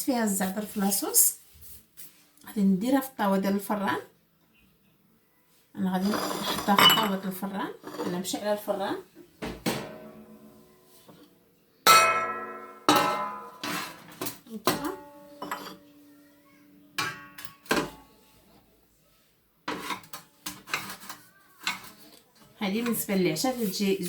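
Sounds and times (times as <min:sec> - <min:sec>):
metal baking tray clanking: 0:11.9 - 0:15.9, 0:17.0 - 0:18.0, 0:19.7 - 0:22.0.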